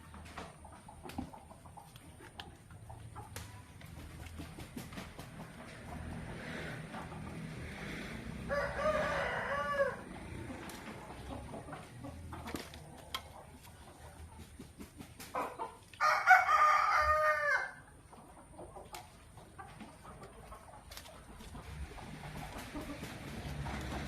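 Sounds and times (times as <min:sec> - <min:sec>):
rooster crowing: 0:08.4 - 0:10.2, 0:16.0 - 0:17.8.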